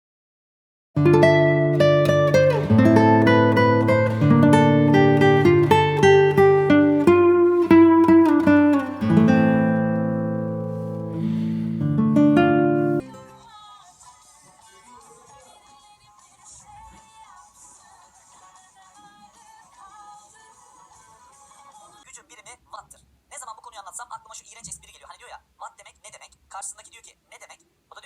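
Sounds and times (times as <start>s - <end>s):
acoustic guitar strumming: 1.0s - 13.4s.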